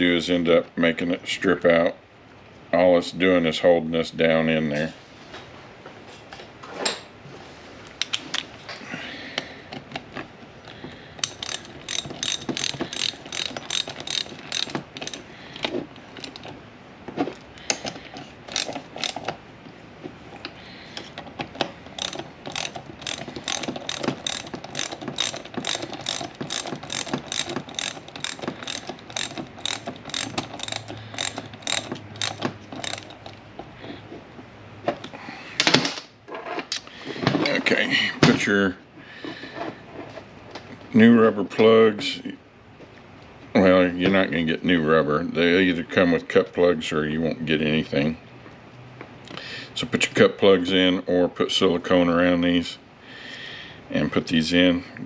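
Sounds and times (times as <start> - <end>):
ratchet wrench clicking: 11.2 - 15.3, 18.5 - 19.3, 21.9 - 33.3.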